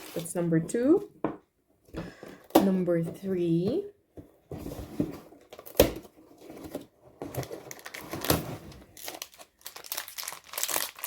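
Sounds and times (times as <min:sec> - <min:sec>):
packaging crinkling and tearing: 0:05.4 - 0:11.0.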